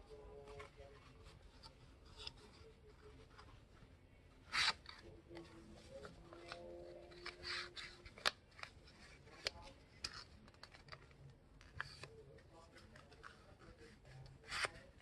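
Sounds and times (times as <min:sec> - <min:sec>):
paper being folded and creased: 0:04.4 - 0:15.0.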